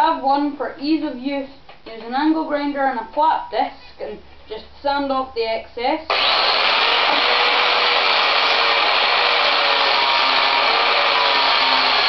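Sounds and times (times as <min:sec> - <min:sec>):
angle grinder sanding wood: 0:06.1 - 0:12.0.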